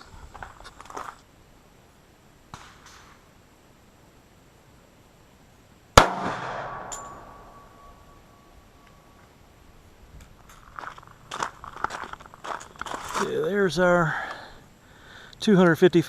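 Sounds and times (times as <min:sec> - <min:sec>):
gunshot echoing: 0:06.0 - 0:08.1.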